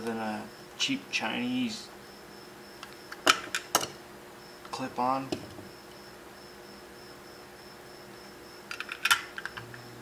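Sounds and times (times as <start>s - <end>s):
faint steady hum: 0.0s - 10.0s.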